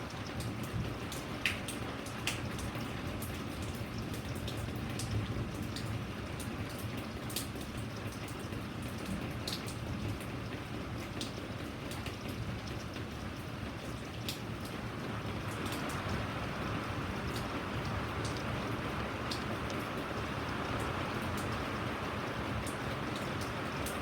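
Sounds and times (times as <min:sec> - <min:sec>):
steady rain falling: 0:00.0 - 0:24.0
drops ticking on a surface: 0:00.1 - 0:14.8, 0:15.4 - 0:22.0.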